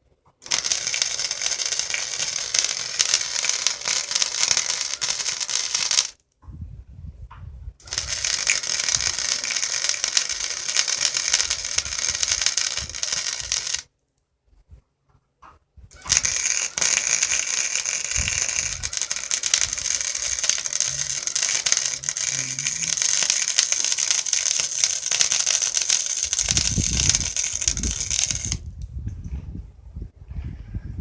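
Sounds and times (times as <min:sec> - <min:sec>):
arc welding crackle and hiss: 0:00.4 - 0:06.2, 0:07.8 - 0:13.9, 0:16.0 - 0:28.6.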